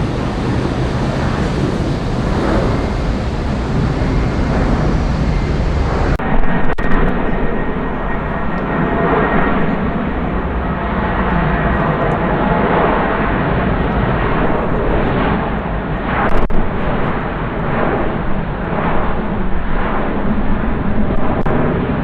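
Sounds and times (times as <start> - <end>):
jet engines roaring: 0.0 - 22.0.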